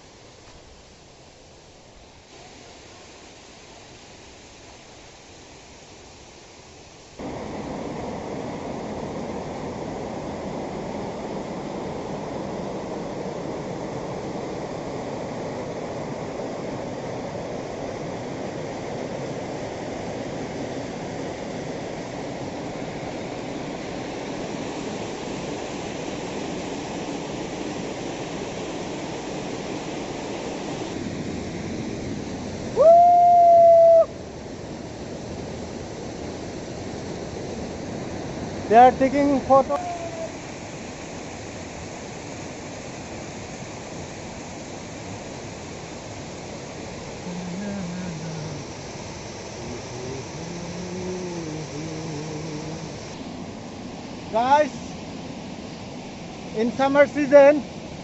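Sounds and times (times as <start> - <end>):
waterfall rushing: 7.1 - 58.0
loud held tone: 47.3 - 48.6, 49.9 - 53.1.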